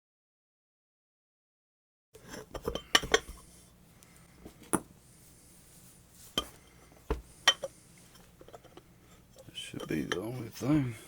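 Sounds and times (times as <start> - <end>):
metal tools clinking: 9.4 - 10.7.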